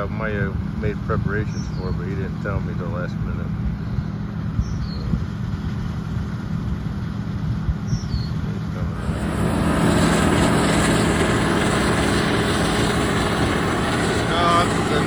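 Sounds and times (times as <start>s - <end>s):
diesel machinery humming: 8.6s - 15.0s
loud rushing noise: 8.9s - 15.0s.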